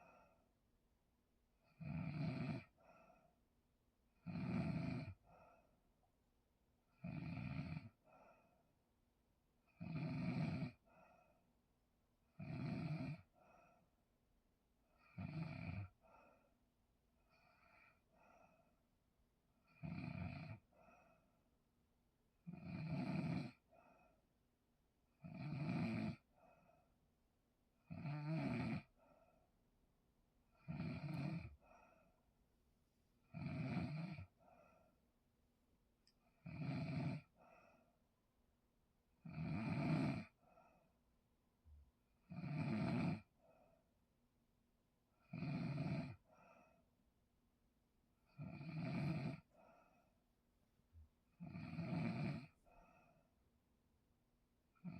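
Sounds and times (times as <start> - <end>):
faint out-breath: 0.0 - 0.7, 2.7 - 3.6, 5.1 - 6.1, 7.8 - 8.8, 10.8 - 11.7, 13.2 - 14.2, 15.8 - 19.0, 20.6 - 21.6, 23.6 - 24.3, 26.2 - 27.0, 28.8 - 29.6, 31.4 - 32.4, 34.2 - 35.1, 37.2 - 38.2, 40.3 - 41.1, 43.4 - 44.0, 46.2 - 47.1, 49.4 - 50.3, 52.5 - 53.4
person snoring: 1.7 - 2.8, 4.2 - 5.2, 7.0 - 8.0, 9.8 - 10.9, 12.4 - 13.3, 15.0 - 16.0, 19.7 - 21.1, 22.5 - 23.6, 25.2 - 26.3, 27.8 - 29.0, 30.6 - 31.6, 33.3 - 34.8, 36.4 - 37.6, 39.2 - 40.4, 42.3 - 43.3, 45.2 - 46.3, 48.3 - 49.5, 51.4 - 53.0.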